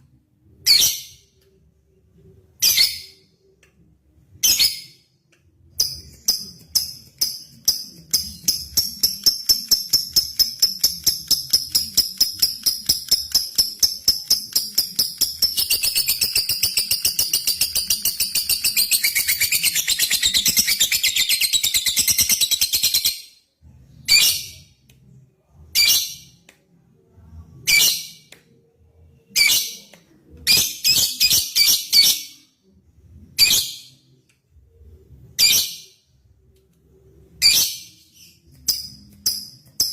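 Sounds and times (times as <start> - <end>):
bird chirps: 5.8 - 23.3.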